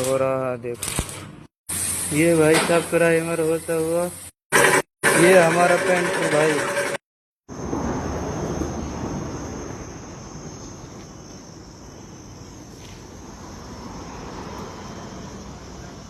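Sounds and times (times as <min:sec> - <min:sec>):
spray gun hissing: 0:01.7 - 0:02.4.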